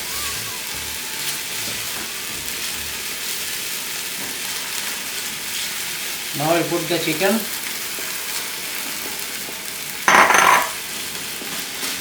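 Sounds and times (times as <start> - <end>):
paste sizzling in hot oil: 0.0 - 12.0.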